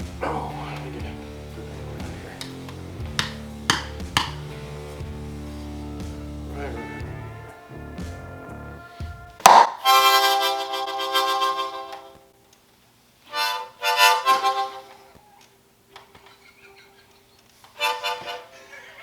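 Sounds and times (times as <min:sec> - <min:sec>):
harmonica blasts: 0:00.0 - 0:12.3, 0:13.3 - 0:15.5, 0:17.7 - 0:19.0
frying pan hitting: 0:03.1 - 0:04.6, 0:09.4 - 0:09.9.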